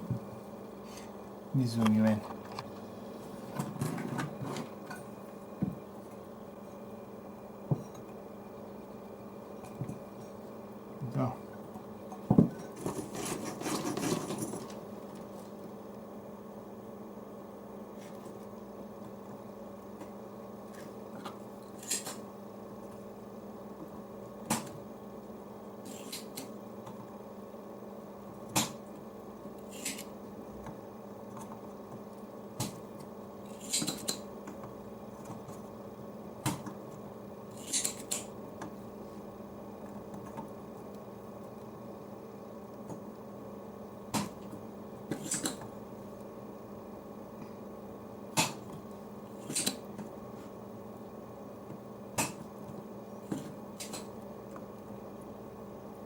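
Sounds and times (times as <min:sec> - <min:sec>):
steady background hum: 0:00.0 - 0:56.0
hand tools clicking and scraping: 0:12.7 - 0:14.8, 0:37.6 - 0:38.3.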